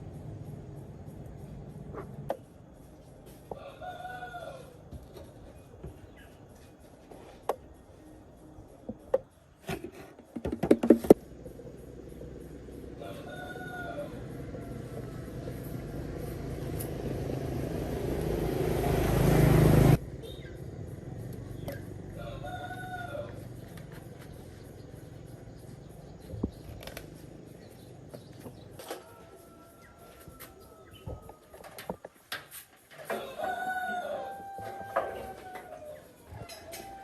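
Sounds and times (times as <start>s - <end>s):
rooster crowing: 3.5s - 4.8s, 12.9s - 16.0s, 22.1s - 23.6s, 28.8s - 31.6s, 33.0s - 37.0s.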